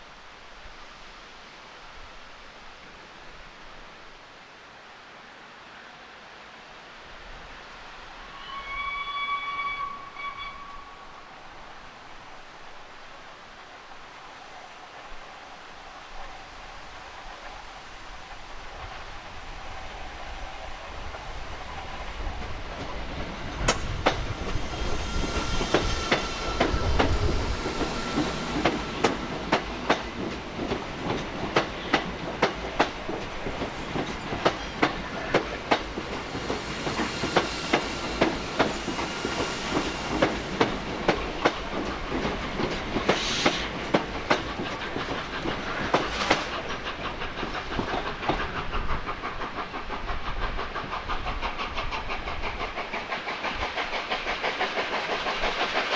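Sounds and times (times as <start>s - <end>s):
train rumble: 10.0s - 55.9s
train wheels clacking over rail joints: 22.3s - 55.9s
short hisses: 35.8s - 44.2s.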